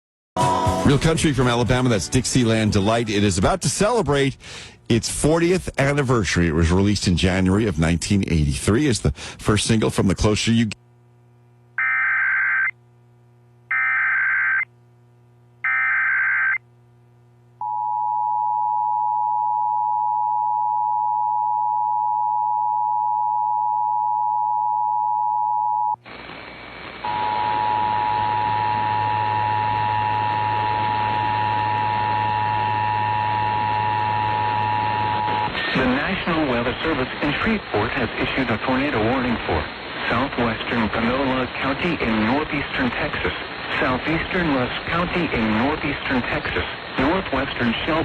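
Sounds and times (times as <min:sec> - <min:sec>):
screeching digital data bursts: 0:11.8 - 0:12.8, 0:13.7 - 0:14.7, 0:15.6 - 0:16.6.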